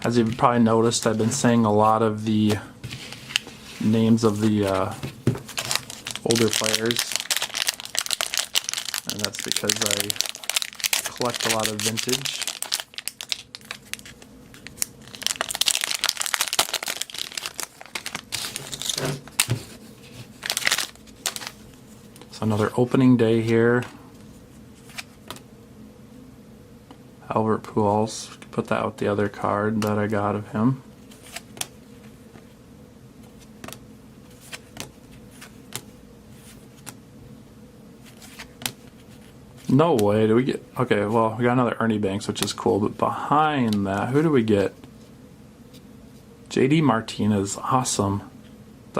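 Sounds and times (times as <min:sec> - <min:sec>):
faint steady hum: 0:00.0 - 0:48.9
wrapper tearing and crinkling: 0:05.5 - 0:19.5, 0:20.3 - 0:21.6.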